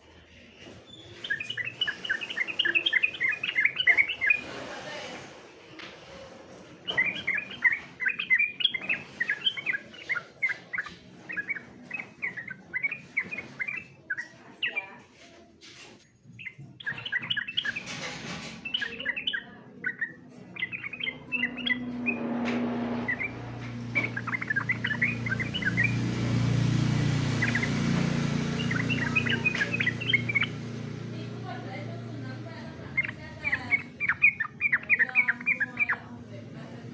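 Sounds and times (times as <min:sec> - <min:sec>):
bird singing bubbly chirps: 0:00.9 - 0:04.5, 0:06.8 - 0:14.8, 0:16.4 - 0:17.9, 0:18.6 - 0:22.2, 0:23.0 - 0:31.0, 0:32.9 - 0:36.0.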